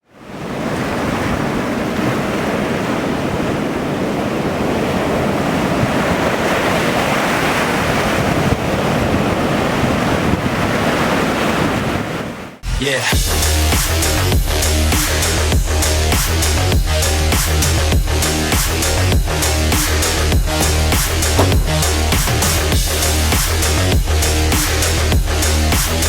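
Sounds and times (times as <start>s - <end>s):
ocean surf breaking: 0.2s - 12.6s
wind buffeting microphone: 0.3s - 12.6s.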